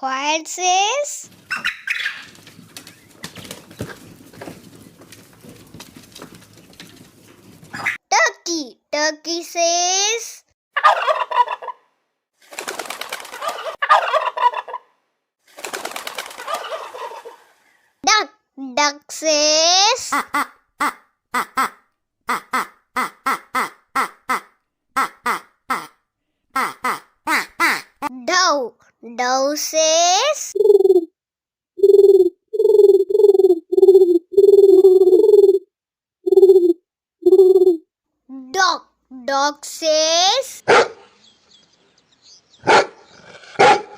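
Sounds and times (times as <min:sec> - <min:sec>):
turkey gobbling: 0:01.4 - 0:05.2, 0:10.8 - 0:11.9, 0:13.4 - 0:14.9, 0:16.4 - 0:17.6
dove cooing: 0:30.6 - 0:31.1, 0:31.8 - 0:35.6, 0:36.3 - 0:37.8.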